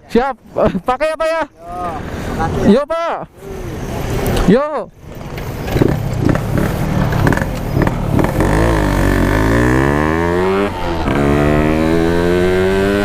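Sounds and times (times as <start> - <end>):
motorcycle accelerating: 3.5 - 13.0.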